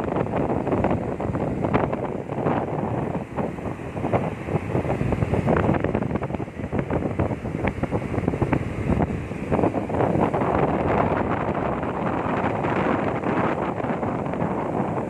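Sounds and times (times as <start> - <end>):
sea waves washing: 0.0 - 15.0
wind buffeting microphone: 0.0 - 15.0.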